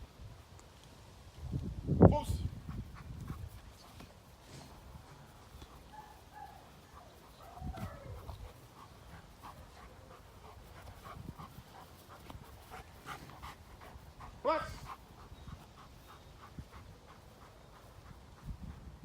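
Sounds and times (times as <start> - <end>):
dog panting softly: 2.5 - 19.0.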